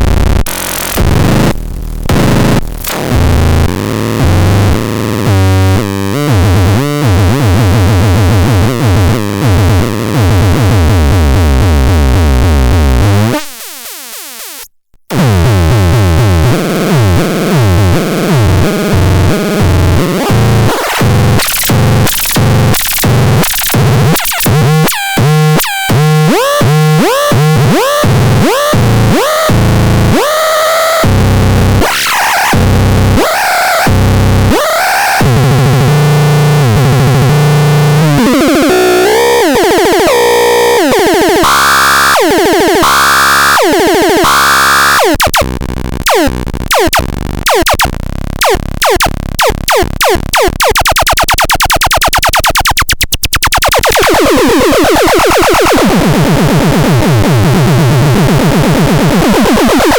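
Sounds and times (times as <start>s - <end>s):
heavy bass drone: 0.0s - 6.8s
harsh electronic synthesizer buzzing: 0.0s - 59.9s.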